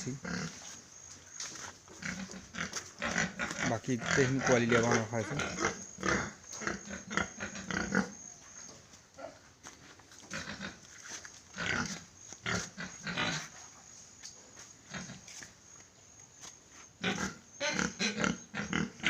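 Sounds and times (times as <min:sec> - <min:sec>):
pigs grunting: 0:00.0 - 0:00.7, 0:01.9 - 0:08.3, 0:09.1 - 0:09.5, 0:10.2 - 0:10.9, 0:11.5 - 0:13.6, 0:14.9 - 0:15.3, 0:17.0 - 0:19.0.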